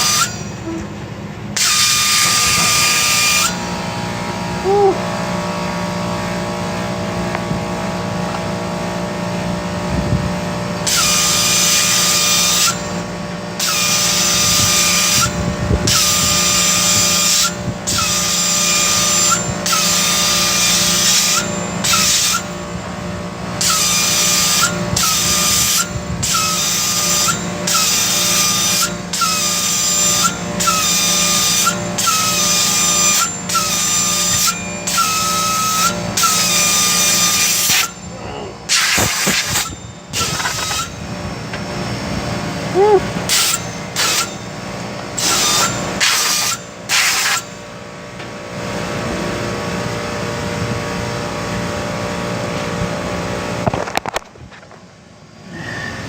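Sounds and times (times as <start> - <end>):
valve whistle: 0.0 - 0.8, 10.8 - 23.0, 23.6 - 47.5
steady low hum: 0.0 - 53.6
blow gun hissing: 38.7 - 40.9, 45.2 - 47.5.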